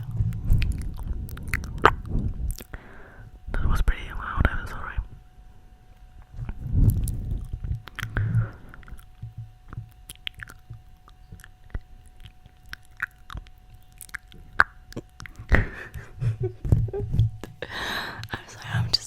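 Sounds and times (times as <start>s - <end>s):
wet mouth clicks and smacks: 0.0s - 2.8s, 6.8s - 15.6s
soft low thumps: 6.3s - 11.9s, 15.4s - 17.6s.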